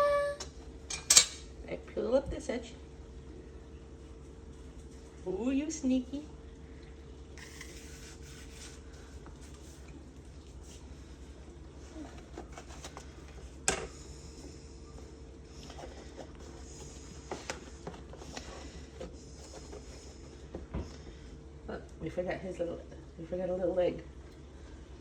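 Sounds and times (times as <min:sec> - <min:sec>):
faint steady hum: 0:00.0 - 0:25.0
hands working dough on a counter: 0:07.4 - 0:21.2.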